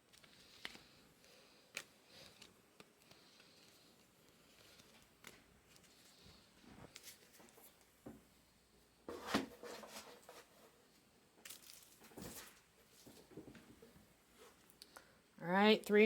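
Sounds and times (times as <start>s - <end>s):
light clicks of card boxes: 0.0s - 6.3s
card packs rustling: 0.0s - 8.0s, 11.4s - 13.8s.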